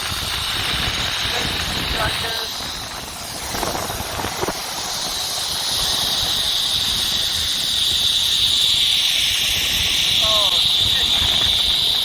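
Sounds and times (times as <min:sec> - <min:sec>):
wind rumbling on microphone: 0:00.0 - 0:12.0
zipline pulley whine: 0:00.0 - 0:12.0.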